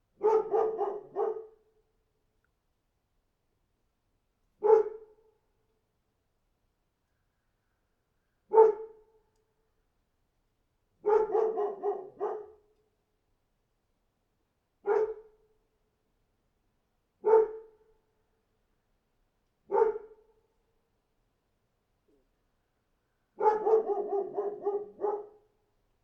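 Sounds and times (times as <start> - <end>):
dog barking: 0.2 - 1.6, 4.6 - 5.2, 8.5 - 9.0, 11.0 - 12.6, 14.8 - 15.4, 17.2 - 17.8, 19.7 - 20.2, 23.4 - 25.5.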